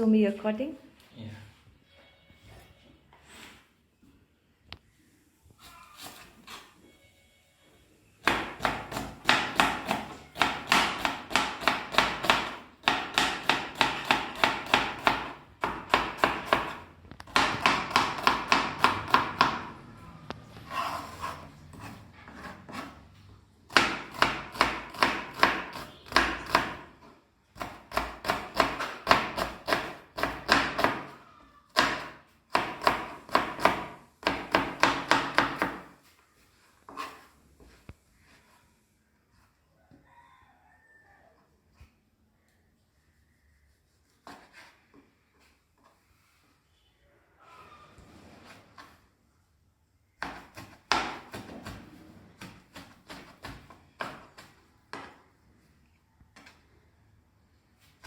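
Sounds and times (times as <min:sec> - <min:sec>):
knife chopping on cutting board: 0:08.2 - 0:19.7, 0:23.7 - 0:26.9, 0:27.6 - 0:31.1, 0:31.8 - 0:35.9, 0:50.2 - 0:55.2.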